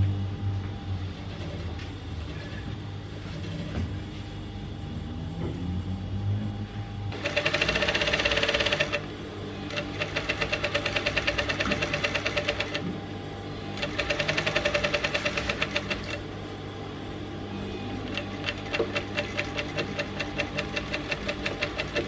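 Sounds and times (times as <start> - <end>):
sewing machine stitching: 7.1 - 9.1, 9.7 - 12.8, 13.8 - 16.2, 18.0 - 22.0.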